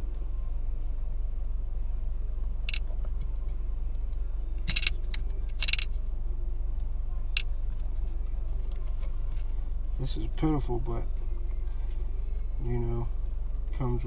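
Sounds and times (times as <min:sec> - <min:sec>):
steady low hum: 0:00.0 - 0:14.0
coins clinking and rattling: 0:04.7 - 0:05.9.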